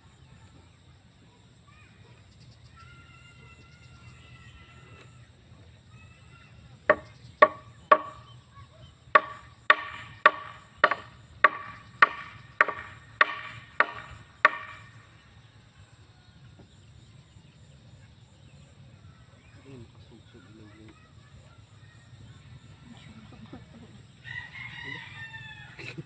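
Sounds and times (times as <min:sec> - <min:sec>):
hammer striking nails into wood: 0:06.9 - 0:08.2, 0:09.2 - 0:15.0.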